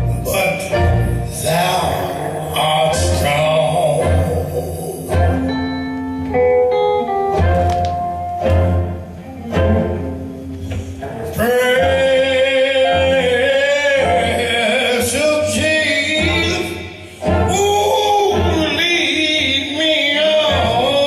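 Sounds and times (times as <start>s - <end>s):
person singing long sliding notes: 0.0s - 6.1s, 11.2s - 21.0s
blues band music: 0.0s - 21.0s.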